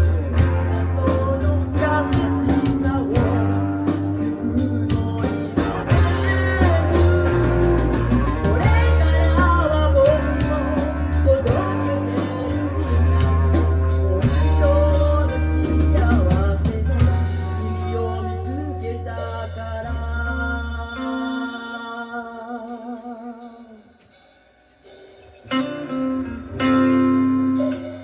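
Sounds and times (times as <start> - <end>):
live band playing pop-rock: 0.0 - 28.0.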